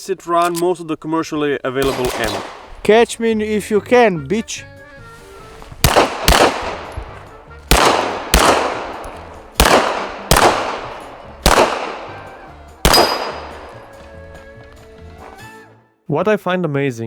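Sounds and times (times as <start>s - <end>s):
pistol shots: 1.8s - 2.8s, 5.8s - 14.0s.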